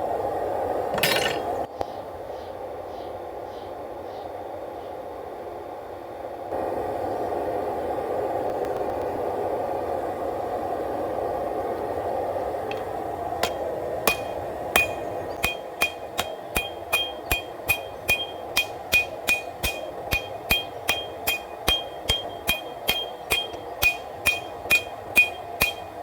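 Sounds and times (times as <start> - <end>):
hammer striking on anvil: 1.0 - 1.6, 13.4 - 26.0.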